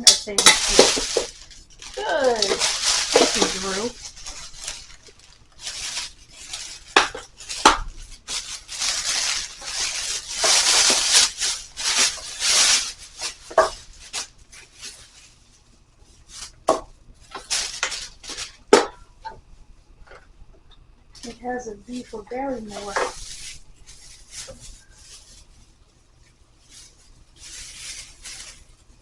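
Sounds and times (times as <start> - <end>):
mixer parts clacking: 0.0 - 14.3
packaging rustling and crinkling: 0.0 - 19.5, 21.2 - 29.0.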